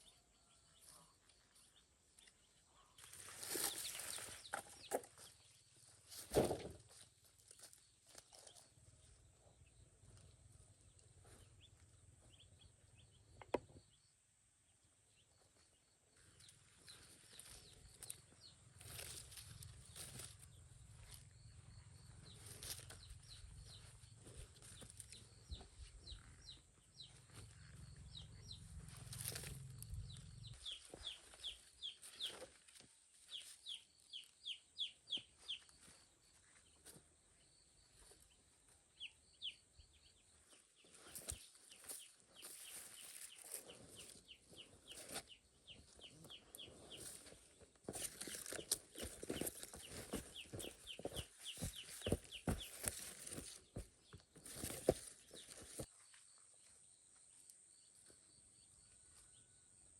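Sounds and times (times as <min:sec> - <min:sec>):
chicks peeping: 0:33.3 - 0:35.7, 0:48.0 - 0:53.8.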